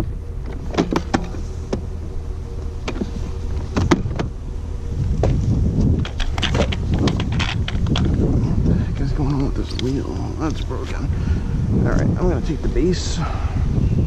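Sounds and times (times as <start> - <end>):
low steady drone: 0.0 - 14.0
wind rumbling on microphone: 0.0 - 14.0
junk being handled clicks: 0.4 - 1.9, 5.2 - 8.2.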